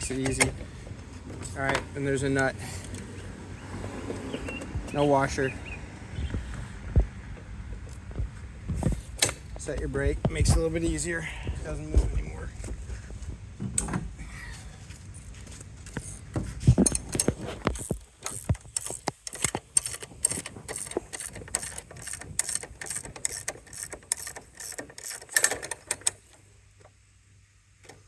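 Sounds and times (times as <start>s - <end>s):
metal ratchet clicking: 16.9s - 26.1s.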